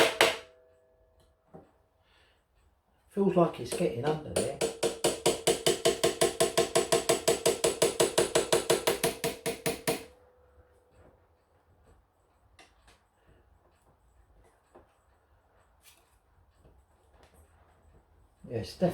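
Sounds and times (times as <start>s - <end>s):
hammer tapping on metal blade: 0.0s - 0.6s, 3.6s - 10.1s.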